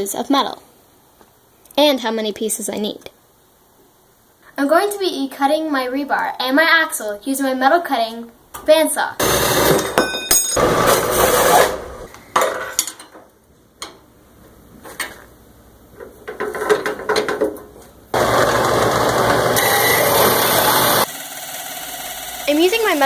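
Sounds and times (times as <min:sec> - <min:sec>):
bandsaw cutting steel: 0:09.2 - 0:10.0, 0:10.6 - 0:12.1, 0:18.2 - 0:23.0.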